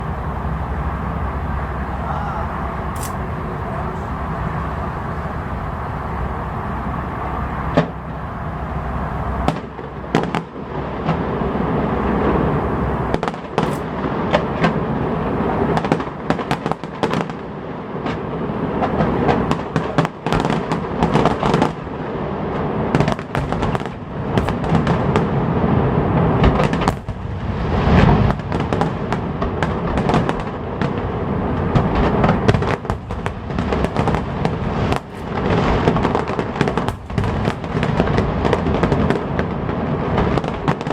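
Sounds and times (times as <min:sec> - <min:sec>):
fireworks bangs and crackling: 0:00.0 - 0:40.9.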